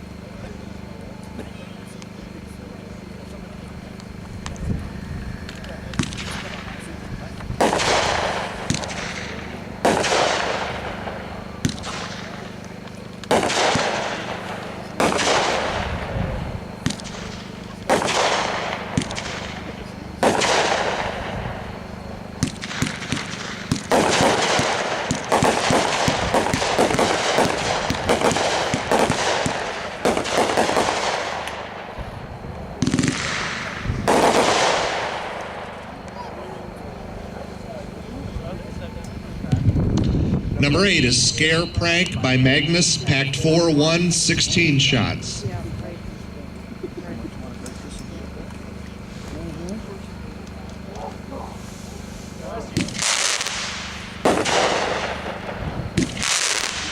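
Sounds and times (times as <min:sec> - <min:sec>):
firework shots: 0:00.0 - 0:46.8, 0:47.4 - 0:56.9
hissing crackling tail: 0:00.0 - 0:56.9
rapid crackling reports: 0:40.5 - 0:55.6.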